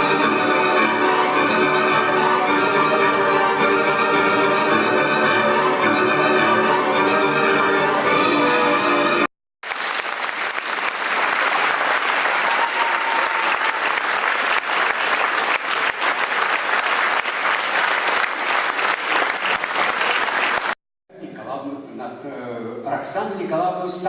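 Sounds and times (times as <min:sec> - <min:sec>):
audience applauding: 0:09.6 - 0:20.8.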